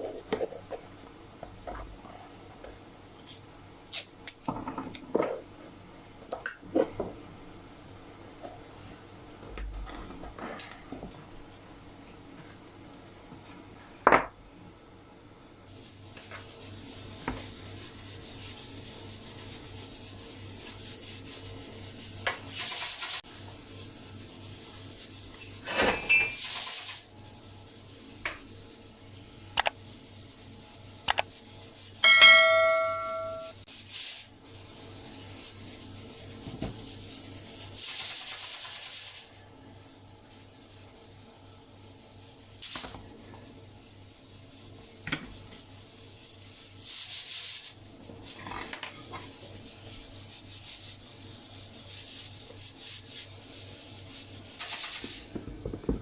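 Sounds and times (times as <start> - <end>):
sanding wood: 15.9 - 25.7
metal object ringing: 26.0 - 26.4, 32.0 - 33.6.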